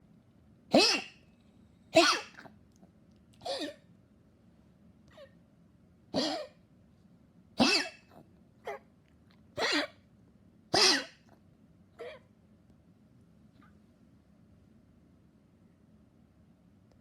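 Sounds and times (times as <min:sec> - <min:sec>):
dog coughing: 0:00.7 - 0:01.2, 0:01.9 - 0:02.5, 0:03.4 - 0:03.8, 0:06.1 - 0:06.6, 0:07.6 - 0:08.8, 0:09.6 - 0:10.0, 0:10.7 - 0:11.3.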